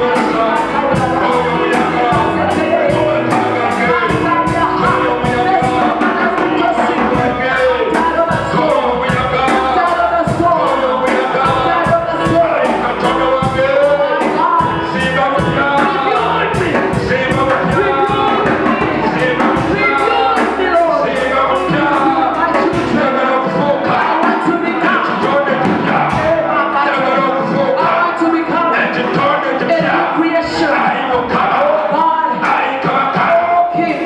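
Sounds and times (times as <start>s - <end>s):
band with steady drum beat: 0.0s - 26.6s
voices singing worship music: 0.0s - 34.0s.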